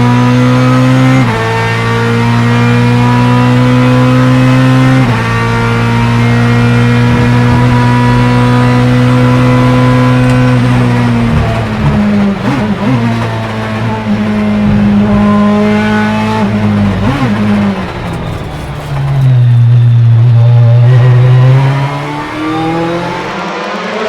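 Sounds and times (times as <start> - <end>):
race car engine at full throttle: 0.0 - 24.0
gearbox upshift: 4.8 - 19.9.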